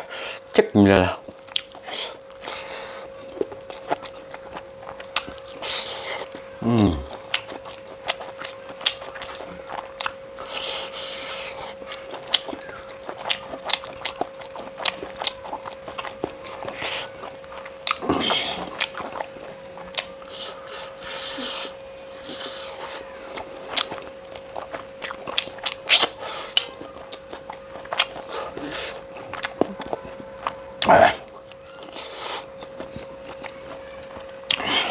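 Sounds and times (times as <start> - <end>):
close-miked wet chewing: 0.0 - 34.9
faint steady hum: 0.0 - 34.9
short falling vocal murmur: 6.6 - 7.1.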